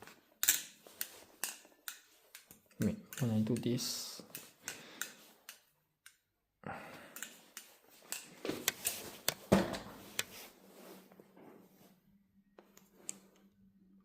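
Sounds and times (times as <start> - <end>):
sharp metal clicks: 1.4 - 3.7.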